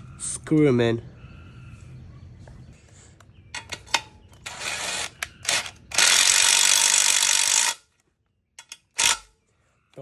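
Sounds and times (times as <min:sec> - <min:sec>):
ratchet wrench ratcheting: 0:04.4 - 0:07.8, 0:08.6 - 0:09.2.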